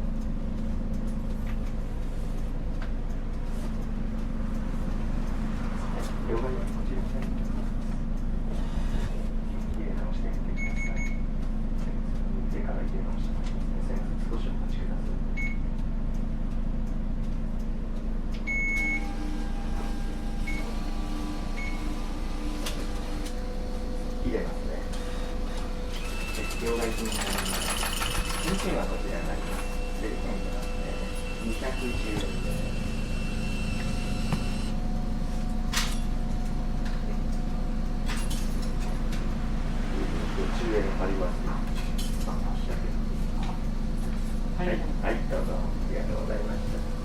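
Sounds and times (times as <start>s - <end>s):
idling bus hum: 0.0s - 47.0s
machine whirr with rhythmic pulse: 0.0s - 47.0s
short beeps: 18.5s - 19.1s.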